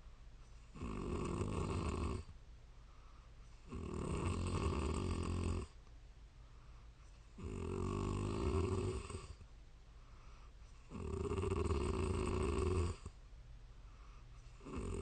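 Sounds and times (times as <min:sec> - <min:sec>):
quiet breathing: 0:00.0 - 0:15.0
woman snoring: 0:00.8 - 0:02.3, 0:03.7 - 0:05.8, 0:07.4 - 0:09.4, 0:10.9 - 0:13.1, 0:14.6 - 0:15.0.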